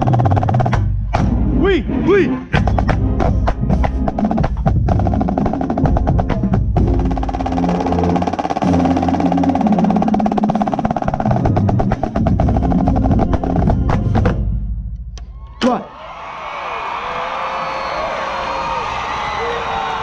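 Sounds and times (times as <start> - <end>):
band holding low notes: 0.0 - 15.5
marching snare drums: 2.6 - 14.5.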